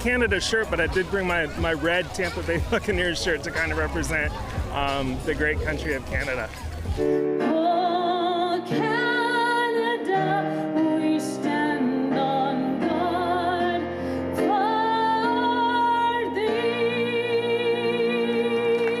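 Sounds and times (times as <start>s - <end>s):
music: 0.0s - 19.0s
woman singing with vibrato: 7.4s - 19.0s.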